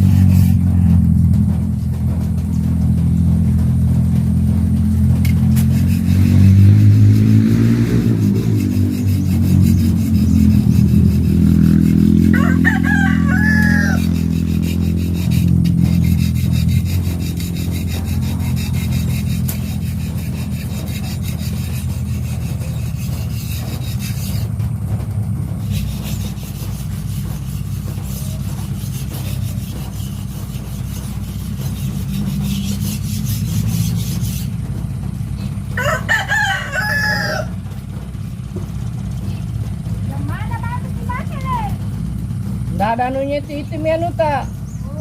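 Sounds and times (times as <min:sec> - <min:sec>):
steady low rumble: 0:00.0 - 0:45.0
rooster crowing: 0:11.7 - 0:14.8, 0:35.7 - 0:37.7.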